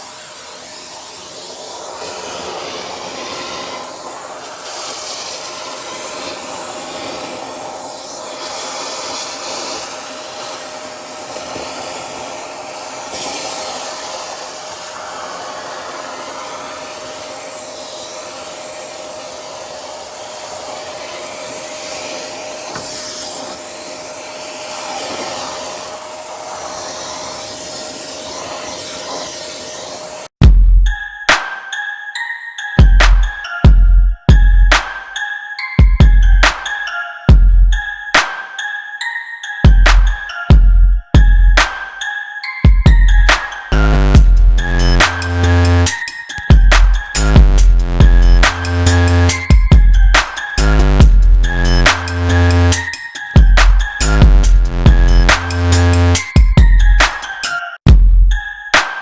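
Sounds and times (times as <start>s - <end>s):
vacuum cleaner whining: 0.0s - 30.3s, 43.2s - 57.4s.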